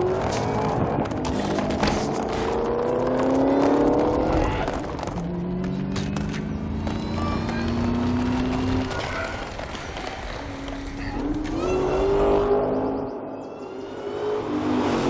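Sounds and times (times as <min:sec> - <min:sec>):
car engine accelerating: 0:00.0 - 0:09.6.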